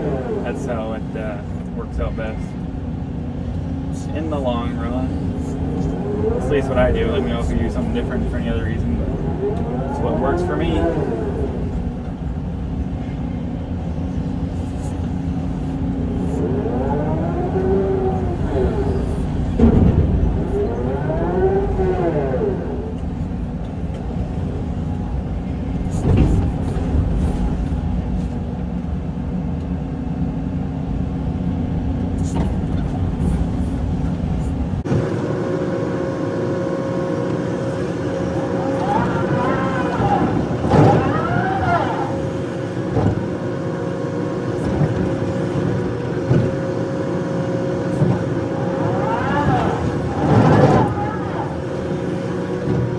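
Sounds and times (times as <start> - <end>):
hydraulic whine: 0.0 - 28.4, 32.1 - 52.9
excavator diesel engine running: 0.0 - 52.9.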